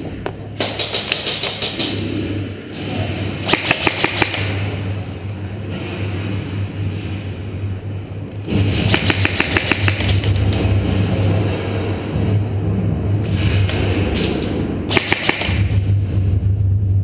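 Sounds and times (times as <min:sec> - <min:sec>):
steady low hum: 0:00.0 - 0:17.0
airsoft guns firing bursts: 0:00.6 - 0:02.0, 0:03.4 - 0:04.7, 0:08.7 - 0:10.4, 0:14.9 - 0:15.8.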